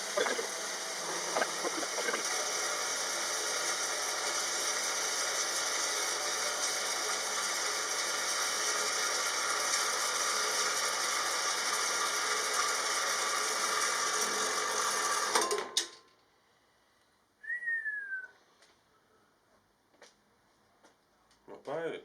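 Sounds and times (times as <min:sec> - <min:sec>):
hissing workshop tool: 0:00.0 - 0:04.8.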